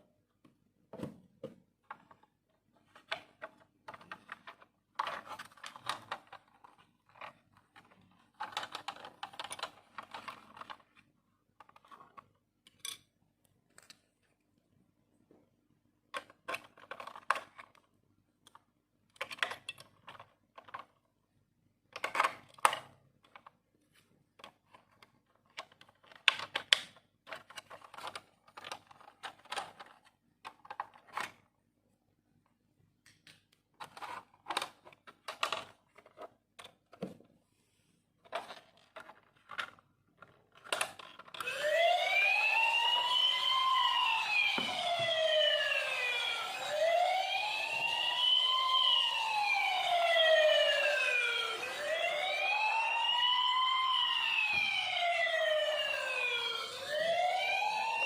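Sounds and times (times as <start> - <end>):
plastic toy clicking and rattling: 1.9 - 11.0, 16.1 - 21.1, 24.4 - 31.4, 33.8 - 36.8, 38.2 - 41.5
electronic toy siren wailing: 41.3 - 58.0.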